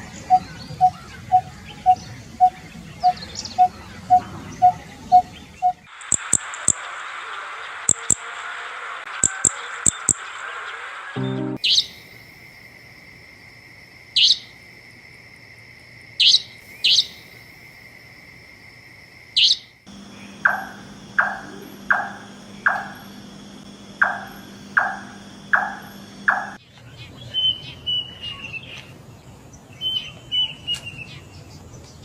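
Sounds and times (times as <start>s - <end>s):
high downward-sweeping bird calls: 0.0s - 7.4s, 9.1s - 12.0s, 14.2s - 14.5s, 16.2s - 17.2s, 19.4s - 28.9s
lower downward-sweeping bird call: 11.2s - 12.0s, 19.4s - 26.6s.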